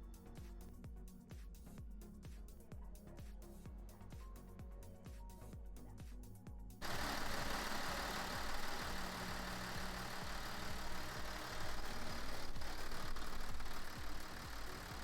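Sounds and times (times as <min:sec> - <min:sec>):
car engine idling: 0:06.8 - 0:15.0.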